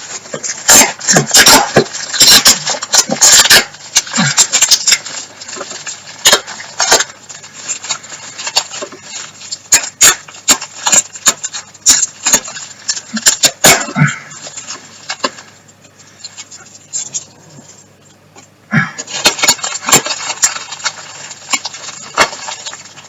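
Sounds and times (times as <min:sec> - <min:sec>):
packaging crackling and tearing: 0:00.0 - 0:17.6, 0:19.0 - 0:23.0.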